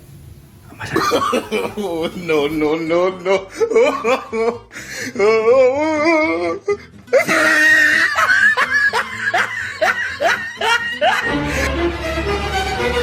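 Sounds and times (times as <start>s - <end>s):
spooky laughter: 0.7s - 13.0s
wavering wail: 5.2s - 11.6s.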